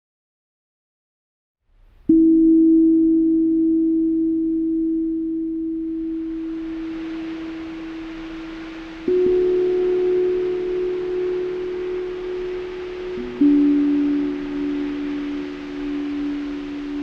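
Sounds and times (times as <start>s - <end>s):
bell-like tone ringing: 2.1s - 17.0s
steady rushing noise: 6.0s - 17.0s.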